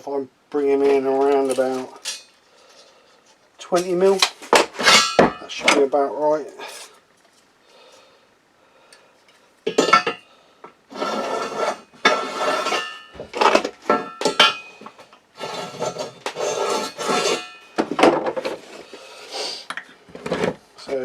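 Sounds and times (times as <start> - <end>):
metal tools clinking on steel: 1.2 - 2.4, 12.7 - 14.9.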